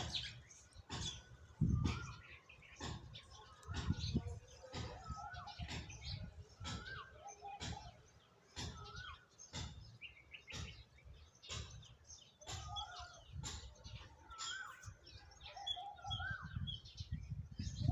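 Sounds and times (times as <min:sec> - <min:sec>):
bird whistled call: 0:01.7 - 0:02.6, 0:15.6 - 0:16.9.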